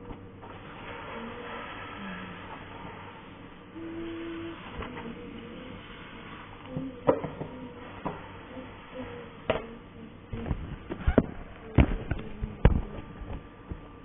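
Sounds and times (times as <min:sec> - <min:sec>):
steady hiss: 0:00.0 - 0:10.9.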